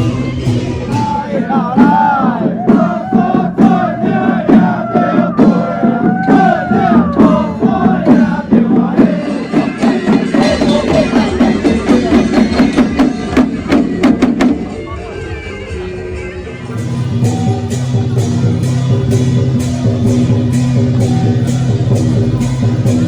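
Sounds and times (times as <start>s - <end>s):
drum and cymbal beats: 0.0s - 23.0s
high gliding melody: 14.7s - 23.0s.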